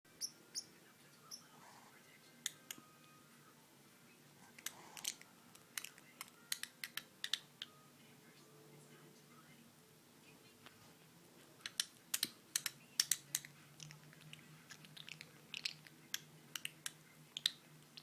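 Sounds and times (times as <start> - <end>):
parrotlet chirping: 0.1 - 1.6, 11.6 - 18.0.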